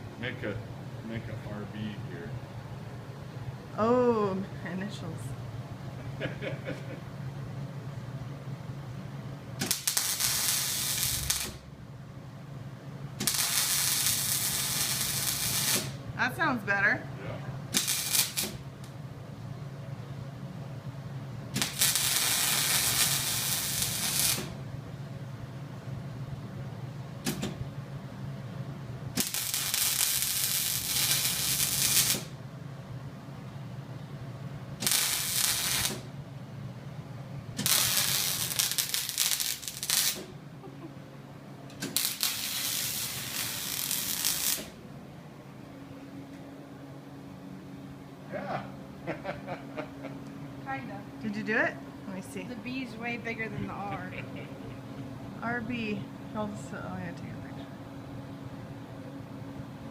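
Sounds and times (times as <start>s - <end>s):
welder arc sizzling: 9.6s - 11.7s, 13.2s - 16.6s, 17.7s - 18.7s, 21.6s - 24.6s, 29.2s - 32.4s, 34.8s - 36.1s, 37.6s - 40.3s, 41.7s - 44.8s
low hum: 11.0s - 59.9s.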